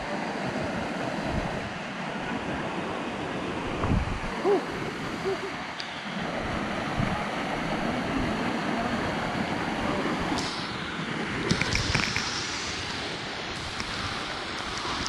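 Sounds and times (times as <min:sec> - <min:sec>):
waterfall rushing: 0:00.0 - 0:15.0
wind buffeting microphone: 0:03.6 - 0:05.6, 0:06.3 - 0:10.4.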